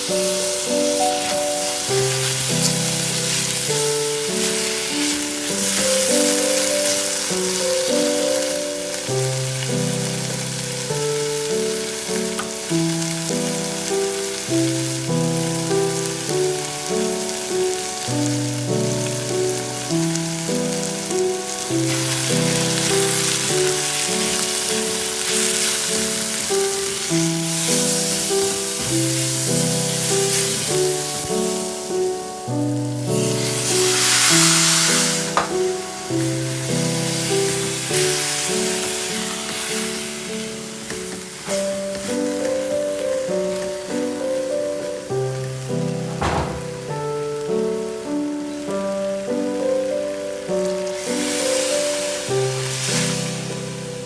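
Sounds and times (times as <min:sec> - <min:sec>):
food sizzling in a pot: 0:00.0 - 0:54.0
gentle piano music: 0:00.0 - 0:54.0.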